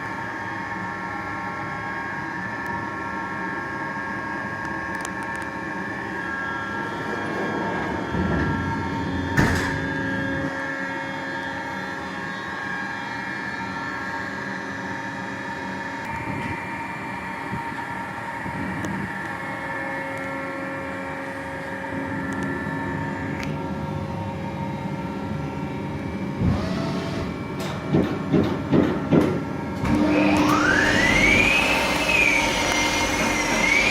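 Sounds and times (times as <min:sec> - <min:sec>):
high steady whining tones: 0:00.0 - 0:27.9, 0:29.4 - 0:33.9
lathe machine hum: 0:29.6 - 0:33.9.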